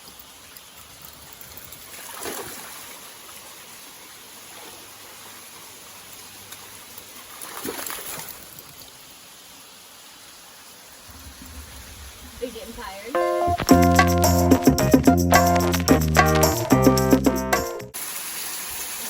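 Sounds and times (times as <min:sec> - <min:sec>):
water splashes: 0:00.0 - 0:13.7
creek and waterfall rushing: 0:08.3 - 0:13.7.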